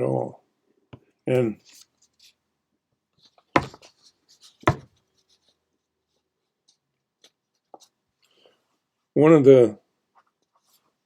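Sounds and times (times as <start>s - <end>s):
sharp taps: 3.6s - 3.8s, 4.7s - 4.9s.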